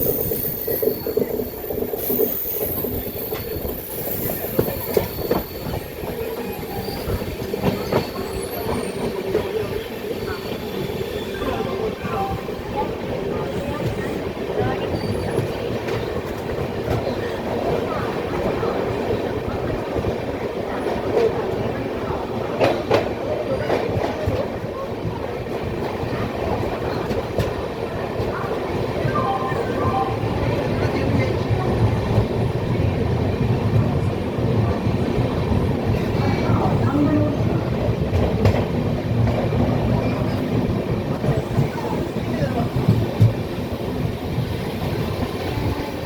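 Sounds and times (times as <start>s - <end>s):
faint wheel squeal: 0.0s - 11.7s
train wheels rumbling: 0.0s - 46.0s.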